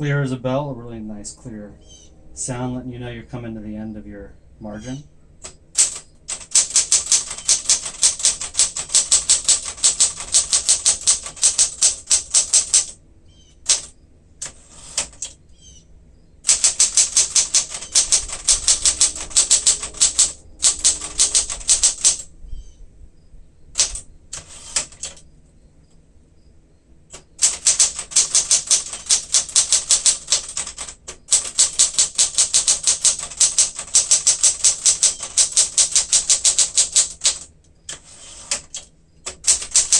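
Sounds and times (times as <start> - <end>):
manual typewriter typing: 5.4 - 13.0, 13.6 - 15.4, 16.5 - 22.3, 23.8 - 25.2, 27.1 - 39.9.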